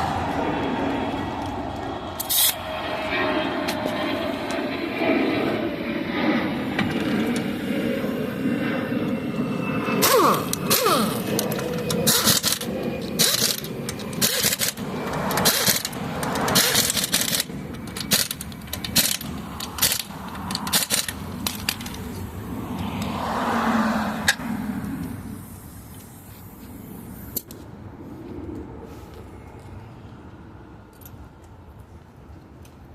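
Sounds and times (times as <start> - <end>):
tools scraping: 10.0 - 22.1.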